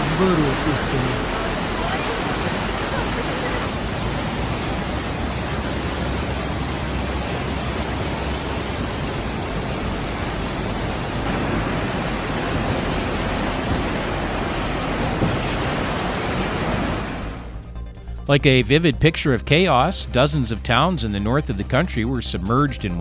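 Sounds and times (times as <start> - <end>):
floodwater rushing: 0.0 - 17.6.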